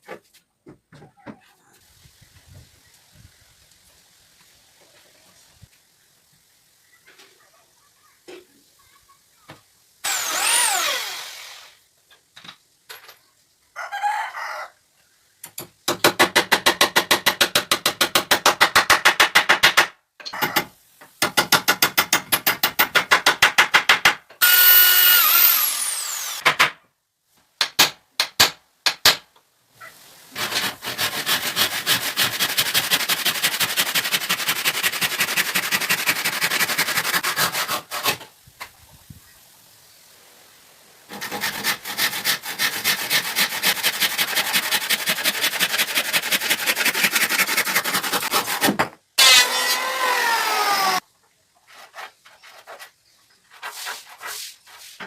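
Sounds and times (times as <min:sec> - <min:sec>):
woodworking tool strokes: 0:24.4 - 0:26.4, 0:30.3 - 0:38.3, 0:41.1 - 0:51.0, 0:51.6 - 0:55.0.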